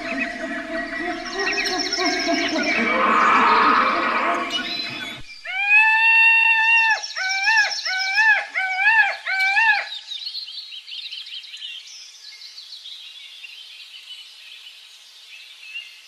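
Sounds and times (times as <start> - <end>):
high bird chirps and trills: 0.0 - 6.0, 6.6 - 10.4
loud pitched animal call: 0.0 - 9.9.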